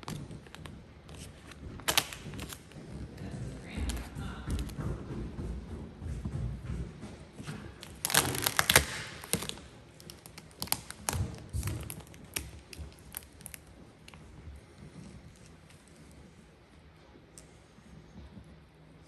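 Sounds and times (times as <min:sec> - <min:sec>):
vinyl film crackling: 0:00.0 - 0:02.8, 0:07.8 - 0:14.3
taps clicks and light thuds: 0:00.0 - 0:16.2.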